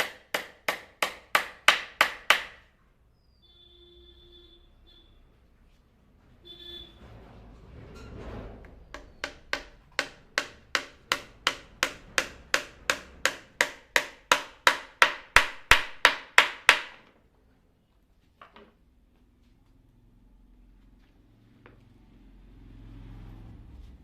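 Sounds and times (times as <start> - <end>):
hammer striking wooden chair: 0.0 - 2.6, 8.9 - 17.1.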